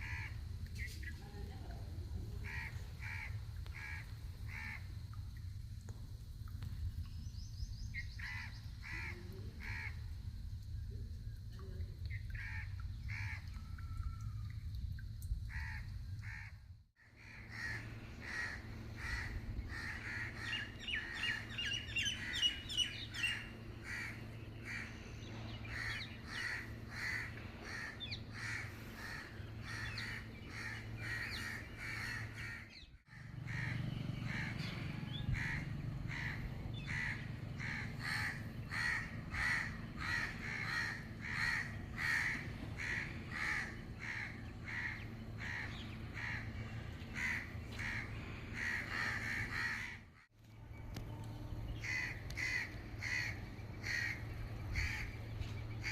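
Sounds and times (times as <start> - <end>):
crows cawing: 0.0 - 0.4, 2.4 - 4.8, 8.2 - 10.0, 12.3 - 14.0, 15.5 - 25.0, 25.6 - 50.3, 51.8 - 55.2
steady low hum: 0.0 - 55.9.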